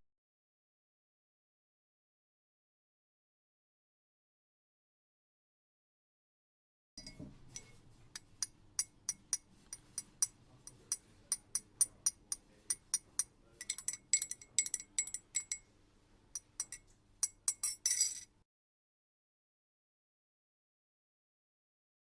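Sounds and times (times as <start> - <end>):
faint steady hum: 7.0 - 18.4.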